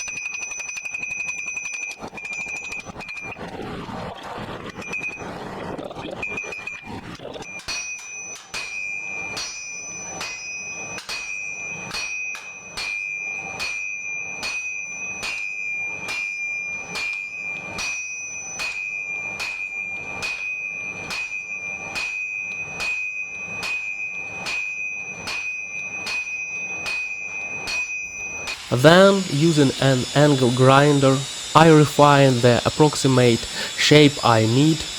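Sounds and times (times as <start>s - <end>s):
hammer striking steel on anvil: 7.6s - 29.2s.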